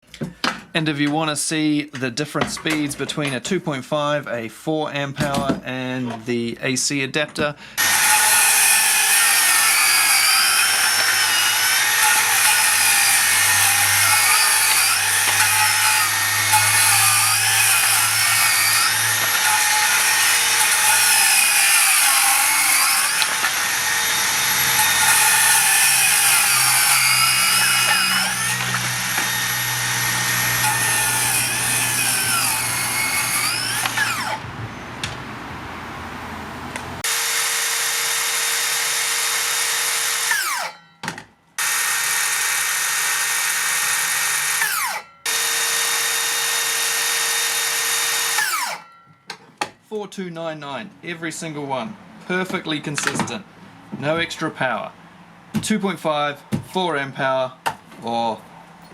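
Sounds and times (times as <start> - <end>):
circular saw whining: 7.8 - 34.9, 37.0 - 41.0, 41.6 - 49.1.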